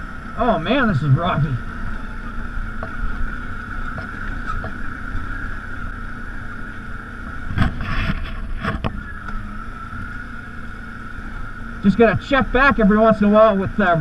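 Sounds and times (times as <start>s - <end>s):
atv engine running: 0.0s - 14.0s.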